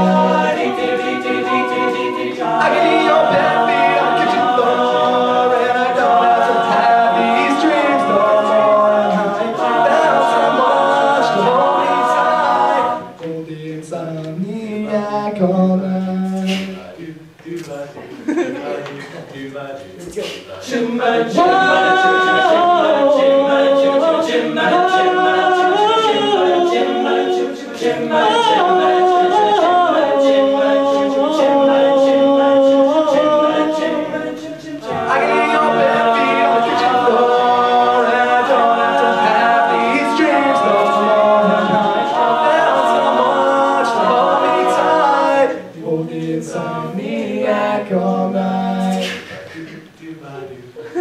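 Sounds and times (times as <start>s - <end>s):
a cappella group singing: 0.0s - 17.4s, 20.1s - 51.0s.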